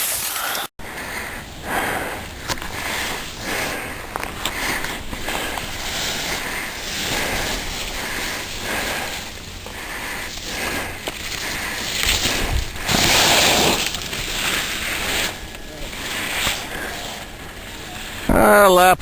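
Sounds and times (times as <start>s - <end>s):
skis scraping across snow: 0.0s - 18.5s
wind on microphone: 12.0s - 13.8s.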